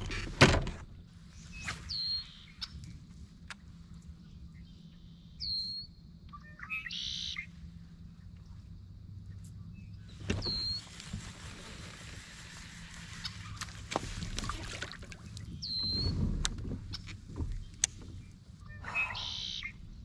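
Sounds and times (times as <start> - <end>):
short high bird call: 18.8 - 19.8.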